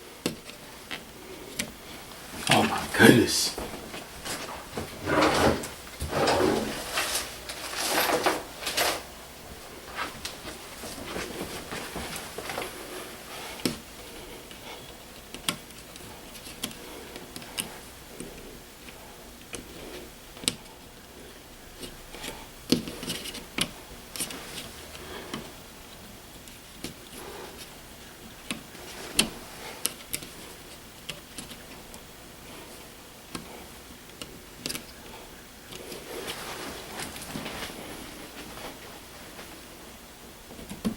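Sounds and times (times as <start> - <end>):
rustling scrape: 3.6 - 13.6, 35.8 - 39.7
clicks and scrapes of wiring: 4.3 - 9.2.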